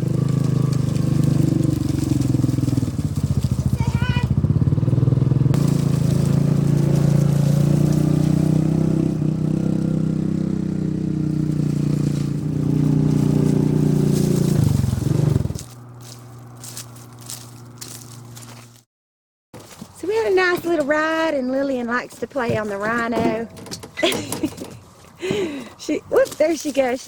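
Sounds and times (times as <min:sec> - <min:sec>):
utility vehicle engine running: 0:00.0 - 0:18.8.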